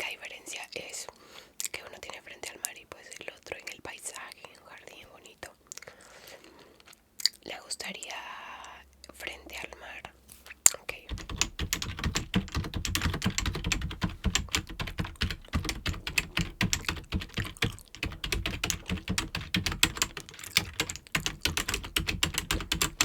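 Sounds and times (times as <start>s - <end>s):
fast typing on a keyboard: 11.1s - 23.0s.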